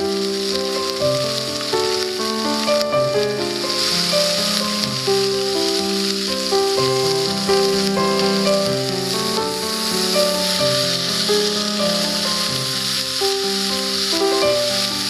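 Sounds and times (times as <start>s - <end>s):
food sizzling: 0.0s - 15.0s.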